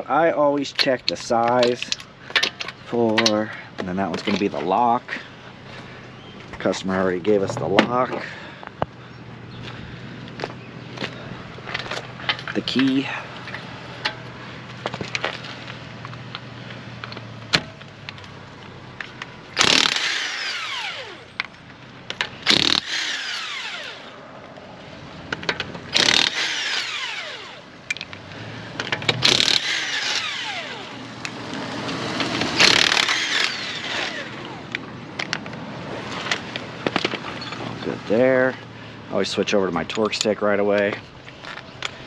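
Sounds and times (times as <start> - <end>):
impact wrench bursts: 19.5 - 24.2, 25.8 - 34.8
motor winding down whine: 19.6 - 21.6, 22.4 - 24.2, 25.9 - 34.8.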